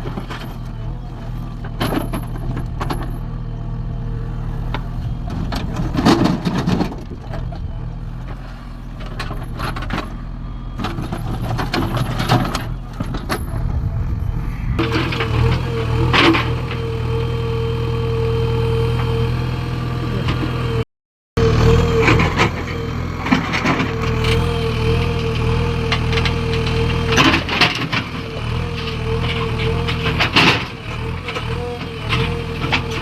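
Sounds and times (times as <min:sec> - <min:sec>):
diesel machinery engine running: 0:00.0 - 0:33.0
constant whine: 0:09.0 - 0:18.2.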